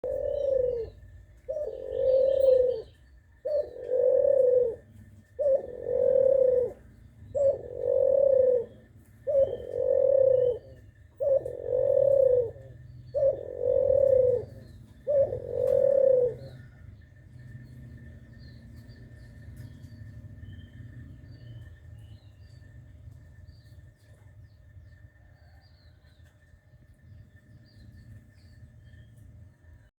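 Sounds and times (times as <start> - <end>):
dove cooing: 0.0 - 21.7.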